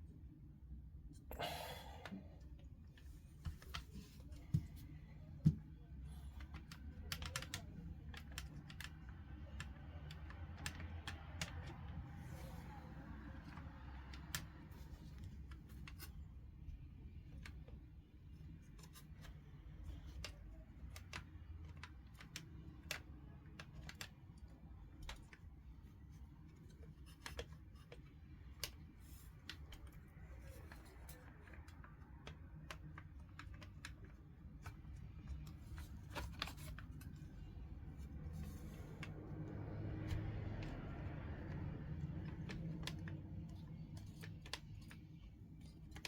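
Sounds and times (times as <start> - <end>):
small clicks and taps of tools: 2.9 - 12.0, 18.6 - 46.0.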